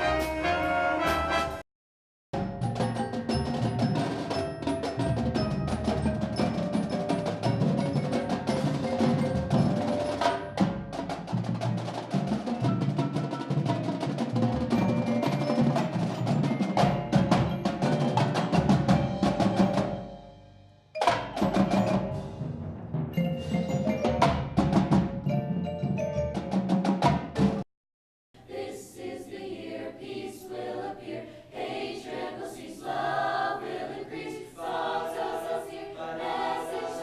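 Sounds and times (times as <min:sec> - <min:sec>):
school band playing: 0:00.0 - 0:01.6, 0:02.4 - 0:27.6
bell-like mallet notes: 0:02.4 - 0:10.9, 0:14.7 - 0:22.5, 0:23.1 - 0:24.6, 0:25.2 - 0:26.6
rapid drum strikes: 0:02.4 - 0:20.3, 0:21.0 - 0:25.5, 0:26.2 - 0:27.6.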